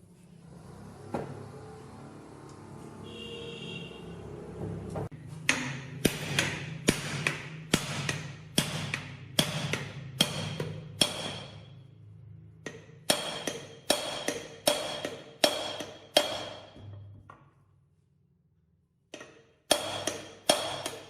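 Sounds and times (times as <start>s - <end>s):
hammer striking metal: 5.4s - 11.9s, 12.6s - 17.2s, 19.1s - 21.0s.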